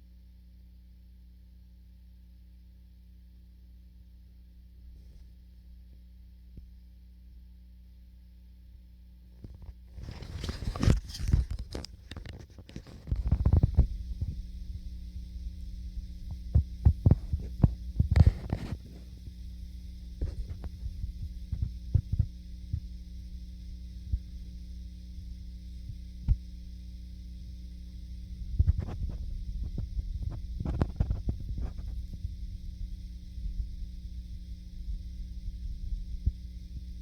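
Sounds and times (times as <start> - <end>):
electrical hum: 0.0 - 37.0
muffled thuds through ceiling: 9.4 - 15.0, 16.1 - 19.1, 20.2 - 23.0, 28.2 - 37.0.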